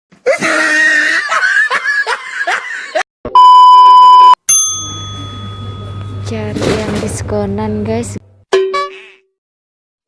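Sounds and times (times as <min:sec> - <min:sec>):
laughter: 0:00.3 - 0:03.1
loud steady beep: 0:03.4 - 0:04.4
ringing ding: 0:04.5 - 0:06.3.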